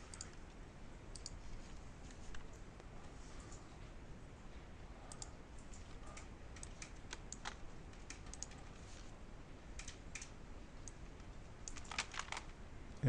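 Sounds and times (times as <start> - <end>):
keyboard keystrokes: 5.1 - 8.7, 11.6 - 12.5.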